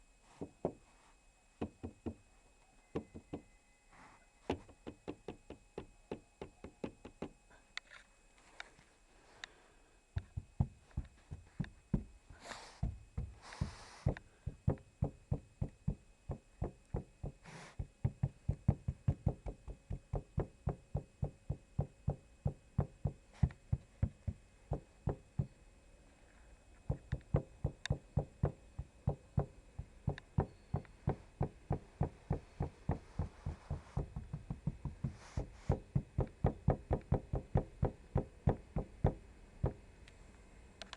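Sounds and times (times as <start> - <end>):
rapid knocking of car trim: 1.6 - 2.2, 3.0 - 3.5, 4.5 - 7.4, 10.2 - 12.2, 14.5 - 25.5, 26.9 - 39.8.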